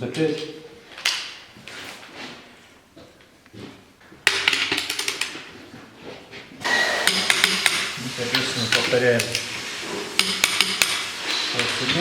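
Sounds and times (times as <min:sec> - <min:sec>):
ratchet wrench clicking: 0:07.0 - 0:07.9, 0:10.2 - 0:11.0.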